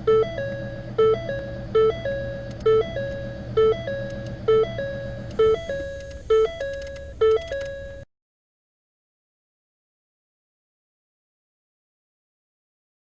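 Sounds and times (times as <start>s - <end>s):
bell-like electronic melody: 0.0s - 8.1s.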